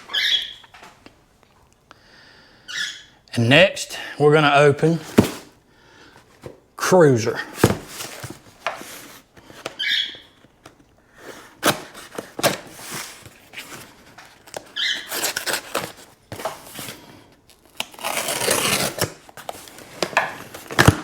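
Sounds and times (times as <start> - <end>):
package knocks and rustling: 5.0 - 5.5, 7.6 - 8.9
short squeaks: 9.8 - 10.3, 14.8 - 15.4.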